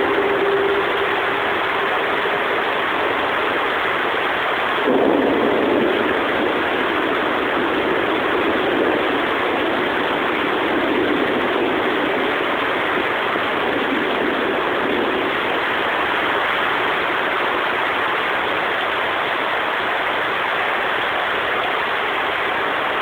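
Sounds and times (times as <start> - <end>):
deep rumble: 0.0 - 13.0
heavy rain pouring: 0.0 - 23.0.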